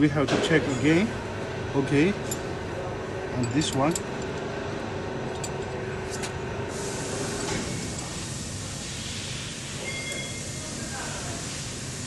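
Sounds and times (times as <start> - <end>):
machine hum: 0.0 - 9.8
hiss of escaping air: 6.7 - 9.8.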